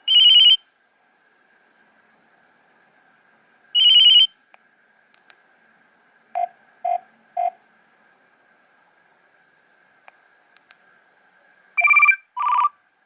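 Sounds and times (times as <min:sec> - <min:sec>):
phone warbling trill: 0:11.8 - 0:12.7
short lower beeps: 0:11.8 - 0:12.7.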